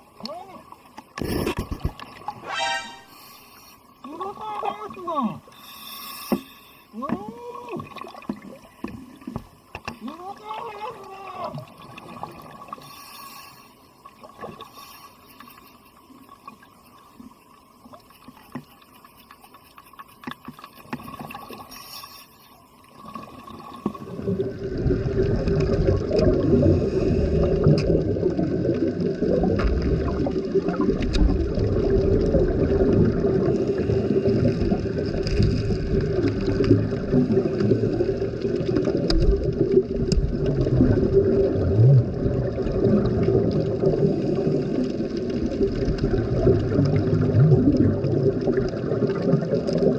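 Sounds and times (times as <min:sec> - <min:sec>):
rising and falling tones: 0:02.4 - 0:03.2
underwater gurgling and bubbling: 0:03.9 - 0:49.9.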